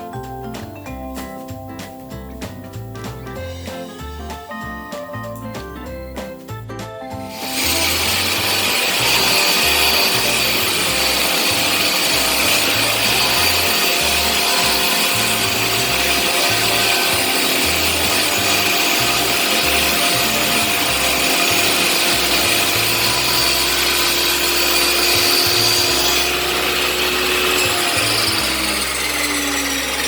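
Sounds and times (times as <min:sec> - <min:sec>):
power tool rasping on wood: 0:07.3 - 0:30.0.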